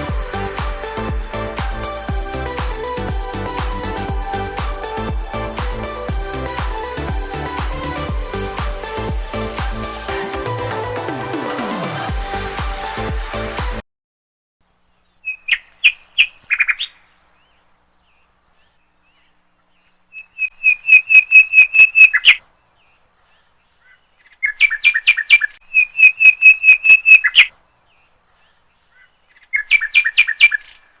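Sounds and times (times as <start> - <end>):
bird chirping in quick trills: 20.1 - 22.4.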